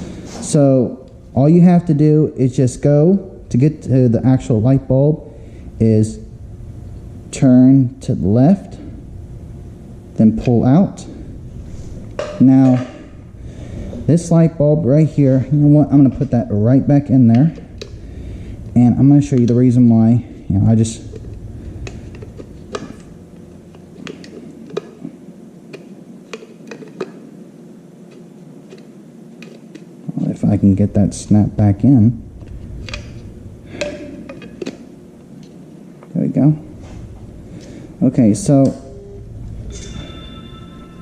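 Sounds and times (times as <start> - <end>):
low hum: 0.0 - 25.7, 38.6 - 41.0
held musical note: 39.0 - 41.0.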